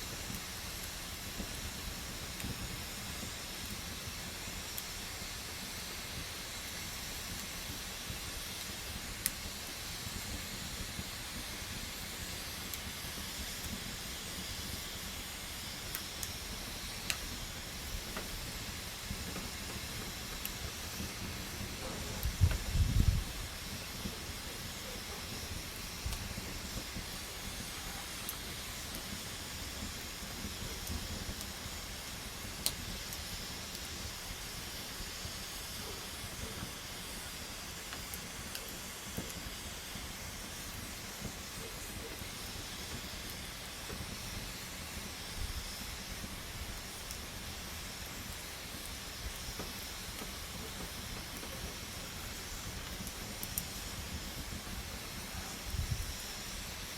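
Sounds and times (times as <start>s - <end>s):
campfire burning: 0.0s - 56.9s
fire crackling pops: 0.0s - 56.9s.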